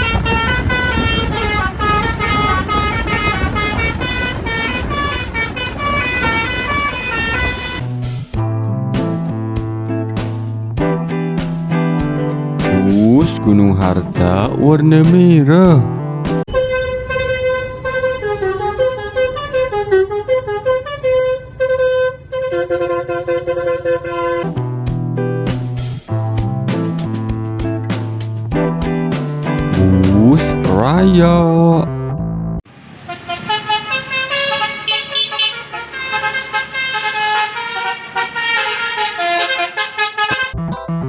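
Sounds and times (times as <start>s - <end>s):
bus horn playing a melody: 0.0s - 8.1s, 16.5s - 24.6s, 29.8s - 31.8s, 33.0s - 40.6s.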